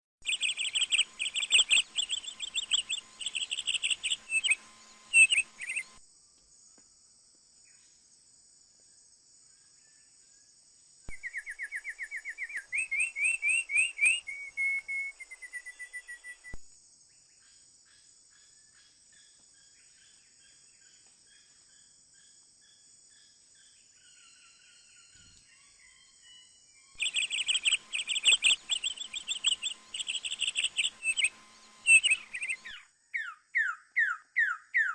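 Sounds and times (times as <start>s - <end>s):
bird chirps and trills: 0.2s - 6.0s, 11.1s - 16.6s, 23.6s - 34.9s
insect drone: 0.2s - 34.4s.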